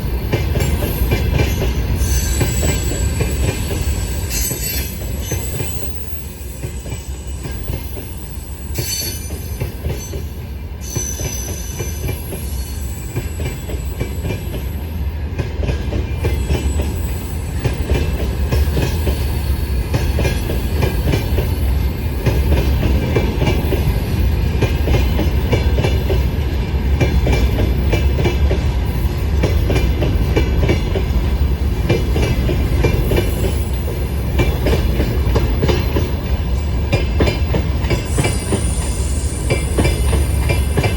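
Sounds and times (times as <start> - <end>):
train wheels rumbling on rails: 0.0 - 40.9
high wheel squeals: 1.9 - 13.7, 37.7 - 40.9.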